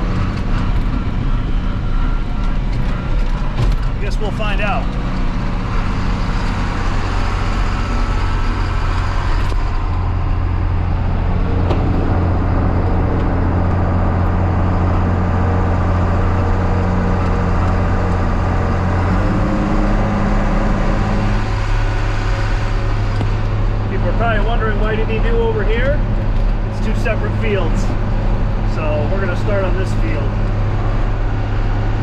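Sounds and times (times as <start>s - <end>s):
tractor diesel engine droning: 0.0s - 32.0s.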